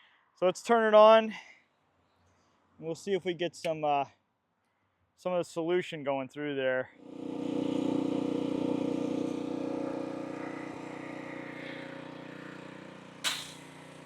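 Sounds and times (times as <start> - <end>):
pressure washer engine running: 7.0 - 14.0
short sharp hiss: 13.2 - 13.8.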